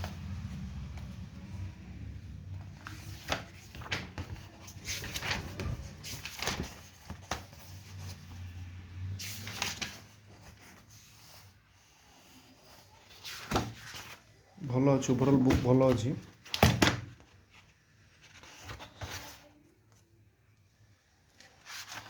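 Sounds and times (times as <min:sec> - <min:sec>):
book pages swishing: 0:00.0 - 0:14.3, 0:21.4 - 0:22.0.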